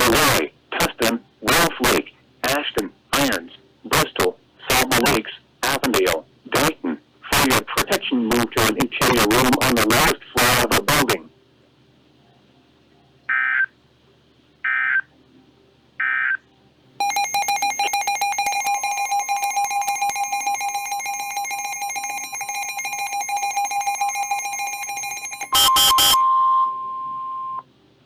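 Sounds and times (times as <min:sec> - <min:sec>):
buzzing alert tone: 0:17.0 - 0:27.6
steady electronic tone: 0:17.0 - 0:27.6
warbling data tones: 0:17.0 - 0:27.6.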